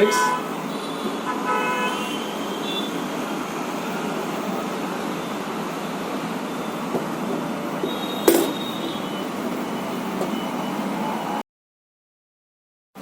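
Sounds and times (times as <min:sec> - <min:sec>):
vehicle horn toot: 0:00.0 - 0:03.0, 0:07.8 - 0:09.4
road traffic noise: 0:00.0 - 0:11.4.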